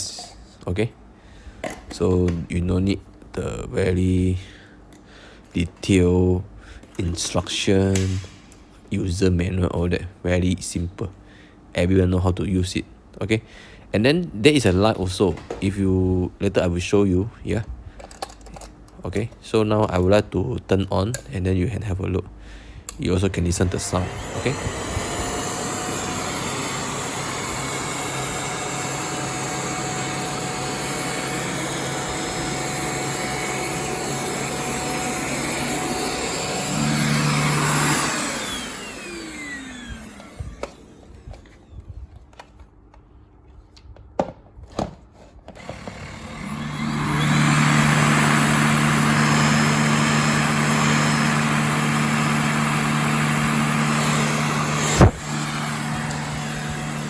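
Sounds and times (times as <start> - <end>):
vacuum cleaner motor running: 23.3 - 42.4, 45.6 - 57.0.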